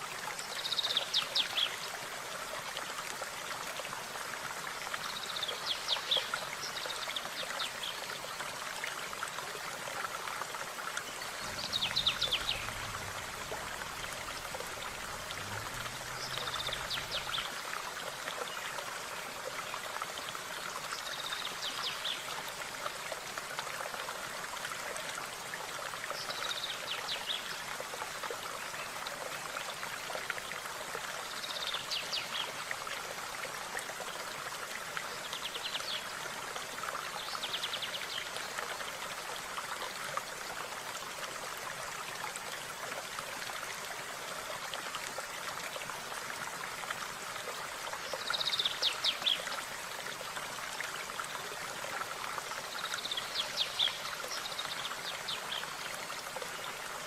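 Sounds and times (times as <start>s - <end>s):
stream running: 0.0s - 57.0s.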